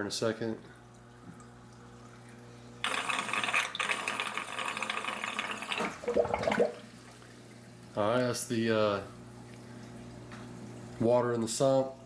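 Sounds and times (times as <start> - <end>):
water gurgling and sputtering in pipe: 2.8 - 7.2.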